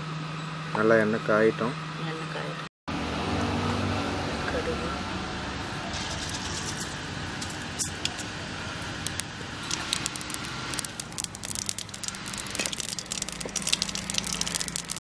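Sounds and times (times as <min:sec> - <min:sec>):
seeds popping in hot oil: 0:08.7 - 0:15.0.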